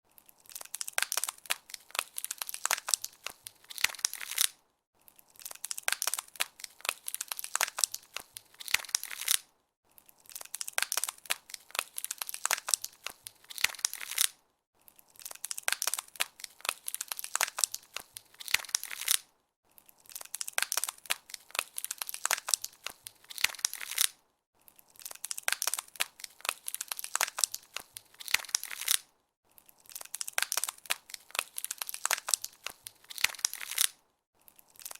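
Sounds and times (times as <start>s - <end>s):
ice crackling: 0.1s - 4.6s.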